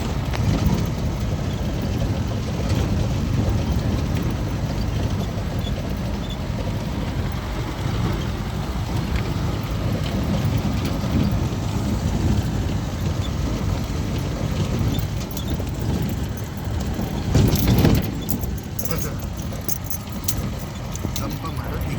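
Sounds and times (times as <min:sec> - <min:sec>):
vehicle rumble on dirt road: 0:00.0 - 0:21.9
knocks and rattles: 0:12.1 - 0:21.9.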